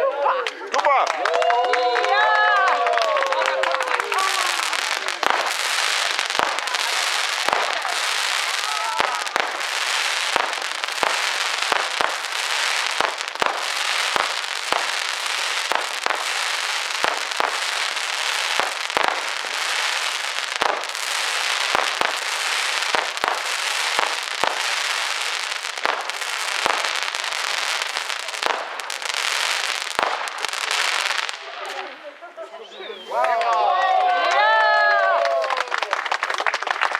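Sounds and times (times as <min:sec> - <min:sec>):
fireworks bangs: 0:02.0 - 0:32.2
fireworks crackling hiss: 0:03.6 - 0:32.2.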